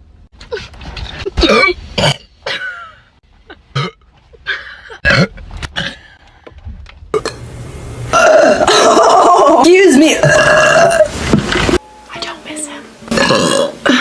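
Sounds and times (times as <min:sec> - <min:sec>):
woman burping: 0:01.4 - 0:06.1, 0:08.1 - 0:11.1, 0:13.1 - 0:14.0.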